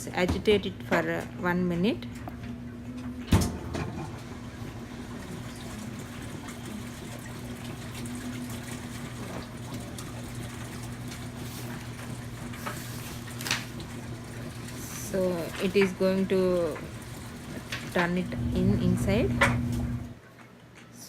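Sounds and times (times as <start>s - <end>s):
washing machine motor hum: 0.0s - 21.0s
water churning: 2.1s - 20.3s.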